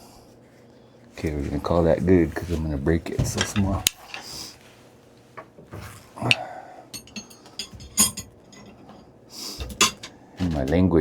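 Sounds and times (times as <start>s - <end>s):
stone tools clicking and tapping: 6.3s - 9.0s, 9.6s - 10.8s.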